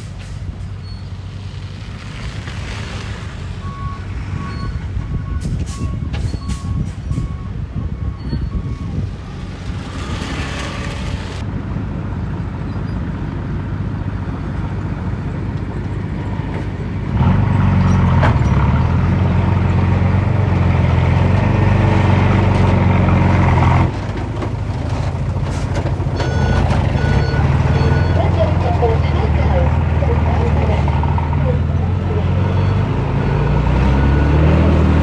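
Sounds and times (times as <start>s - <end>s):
heavy diesel engine running: 3.2s - 32.8s
short reversing beeps: 26.2s - 29.1s.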